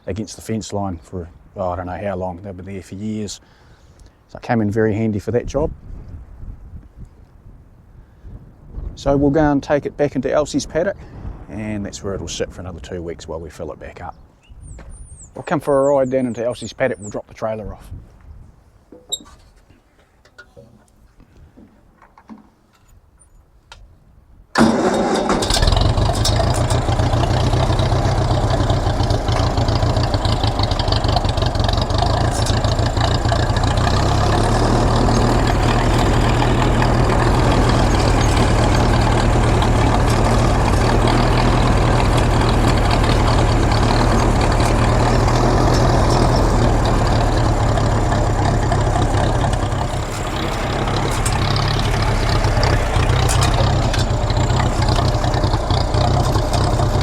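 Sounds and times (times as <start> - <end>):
tractor engine running: 24.6 - 57.0.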